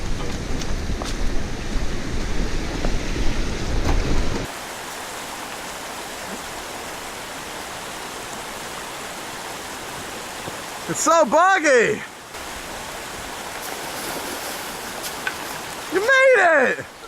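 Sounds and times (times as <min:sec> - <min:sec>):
wind buffeting microphone: 0:00.0 - 0:04.5.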